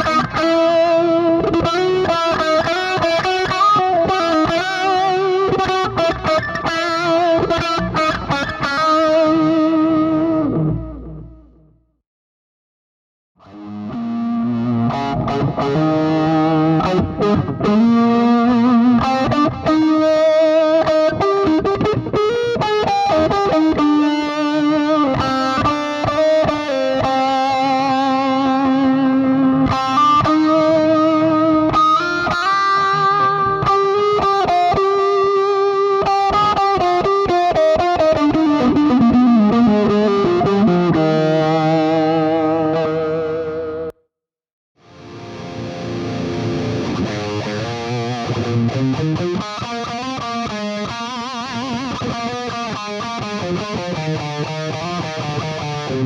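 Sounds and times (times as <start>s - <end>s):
filtered electric guitar lead: 0.0s - 11.9s, 13.4s - 44.0s, 44.8s - 56.0s.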